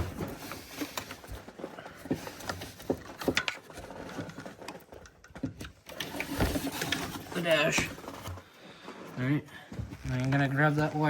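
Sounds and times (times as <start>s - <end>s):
hands clicking and knocking wiring: 0.0s - 8.4s.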